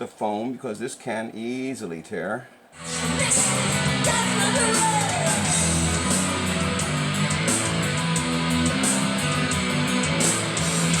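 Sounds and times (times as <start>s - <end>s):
rock music with guitar and drums: 2.8s - 11.0s.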